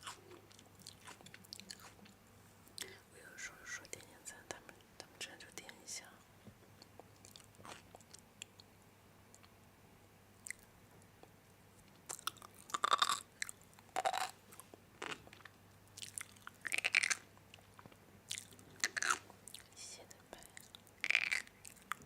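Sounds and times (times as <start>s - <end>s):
crunchy snack being chewed: 0.0s - 2.2s, 6.9s - 8.6s, 11.9s - 19.8s, 20.4s - 22.0s.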